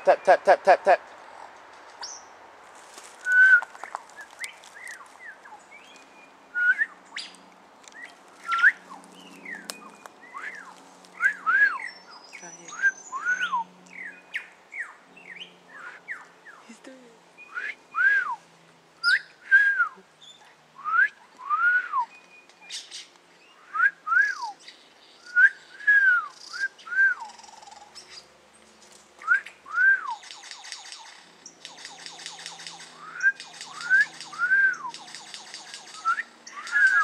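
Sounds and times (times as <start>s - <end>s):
bird whistling: 6.5s - 7.3s, 8.0s - 8.8s, 9.5s - 12.0s, 12.7s - 14.2s, 19.0s - 20.0s, 20.8s - 28.2s, 29.2s - 31.1s, 31.7s - 37.0s
rapid rattling bird clicks: 30.2s - 37.0s.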